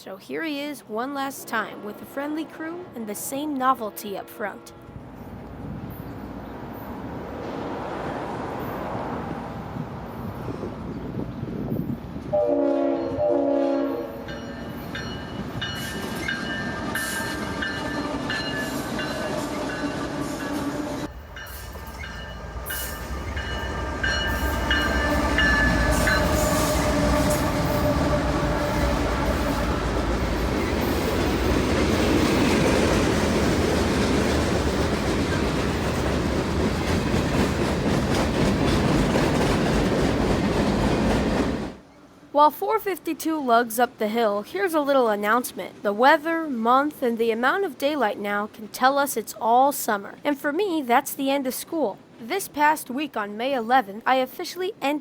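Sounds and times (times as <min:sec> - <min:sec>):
locomotive air horn blasts: 0:12.3 - 0:14.3, 0:23.4 - 0:30.7
train wheels clattering over rails: 0:14.6 - 0:41.8.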